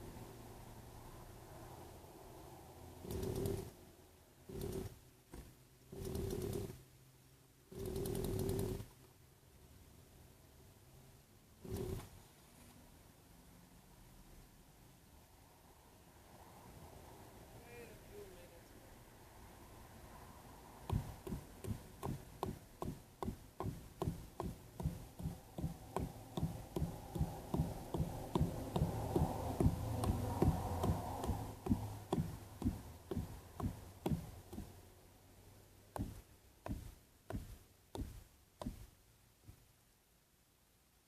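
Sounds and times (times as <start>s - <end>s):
sharp knocks: 20.8s - 34.8s, 35.9s - 38.9s.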